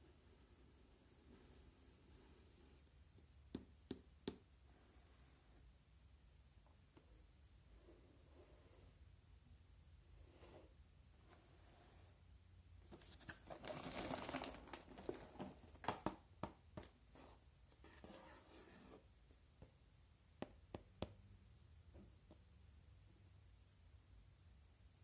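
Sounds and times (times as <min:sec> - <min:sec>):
packaging rustling and tearing: 0:13.0 - 0:15.6.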